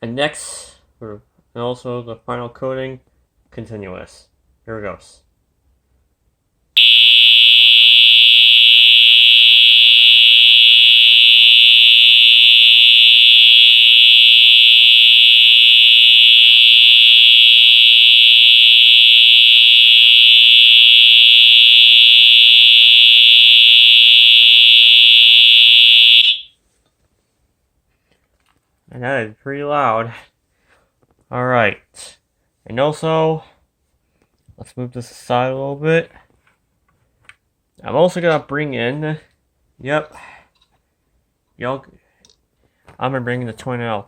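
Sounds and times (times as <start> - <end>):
fire alarm horn tone: 6.8 - 26.5.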